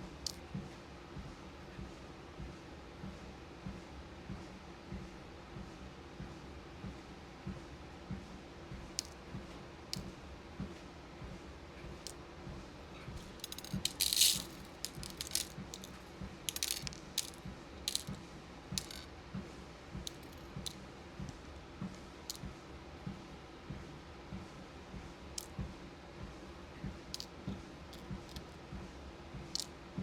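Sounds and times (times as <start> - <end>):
beads rattling and clicking: 13.2 - 18.2, 18.8 - 19.1, 20.1 - 20.8, 27.9 - 28.6.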